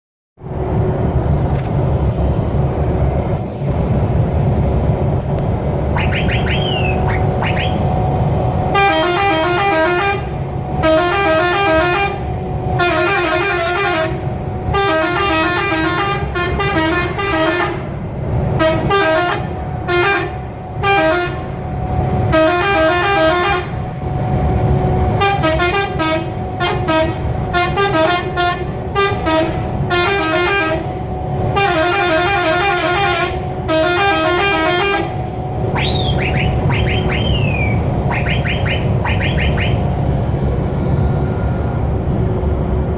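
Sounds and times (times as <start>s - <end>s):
steady low rumble: 0.4s - 12.8s, 35.2s - 42.9s
whistle horn rising whistles: 5.9s - 8.0s, 35.7s - 39.9s
air horn playing a melody: 6.0s - 7.9s, 8.7s - 17.9s, 18.6s - 21.4s, 22.3s - 23.8s, 25.2s - 30.9s, 31.6s - 35.2s, 35.8s - 39.9s.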